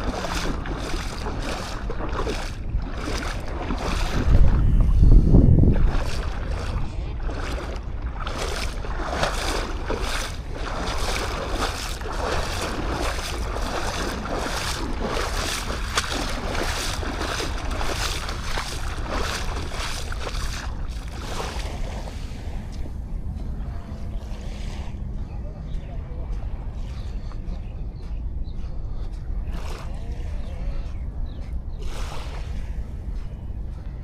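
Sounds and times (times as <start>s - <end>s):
surf washing on sandy beach: 0.0s - 23.0s, 31.8s - 33.2s
wind rumbling on microphone: 0.0s - 34.0s.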